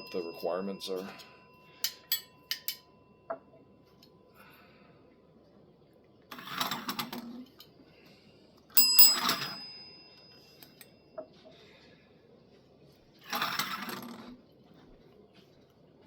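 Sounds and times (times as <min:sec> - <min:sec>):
bell struck and ringing: 0:00.0 - 0:03.5, 0:08.8 - 0:10.8.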